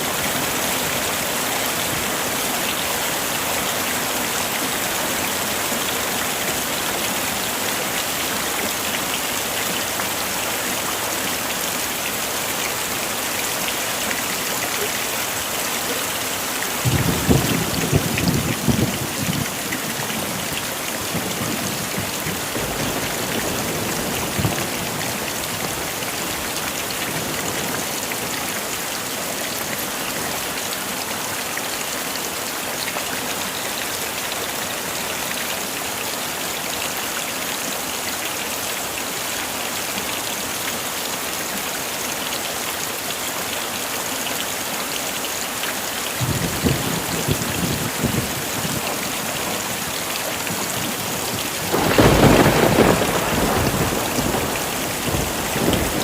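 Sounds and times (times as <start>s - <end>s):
heavy rain: 0.0s - 56.0s
low rumble of thunder: 16.8s - 25.7s, 46.2s - 48.9s, 50.7s - 56.0s.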